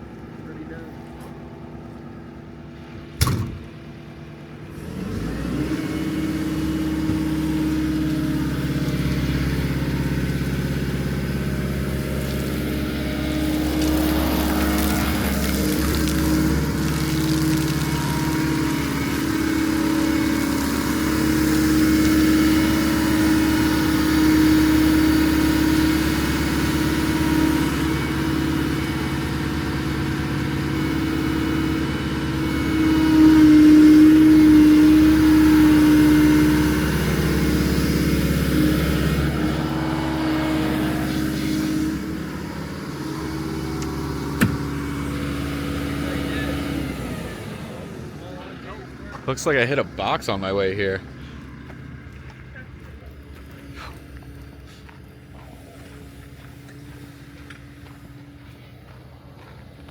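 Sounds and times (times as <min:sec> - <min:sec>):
engine running: 0:00.0 - 0:59.9
short knock: 0:03.2 - 0:03.7.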